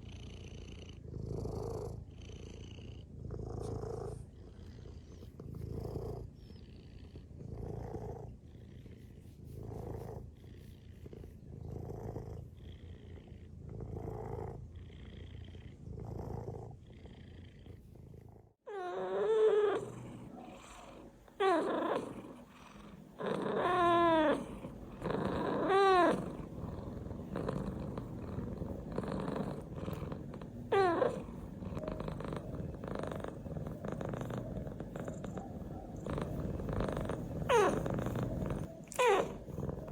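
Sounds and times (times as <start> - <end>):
cat purring: 0.0 - 39.9
cat meowing: 25.3 - 26.4, 37.4 - 39.6.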